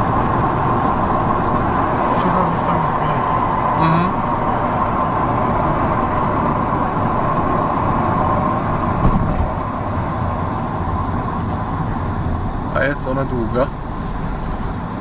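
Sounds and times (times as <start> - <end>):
car road and engine noise: 0.0 - 15.0
car bump: 8.9 - 10.0.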